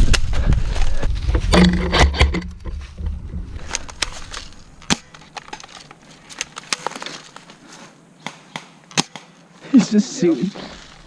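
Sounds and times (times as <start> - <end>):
footsteps crunching dry leaves: 0.0 - 1.5, 2.6 - 7.9, 10.2 - 11.0
microphone handling rumble: 0.0 - 4.8.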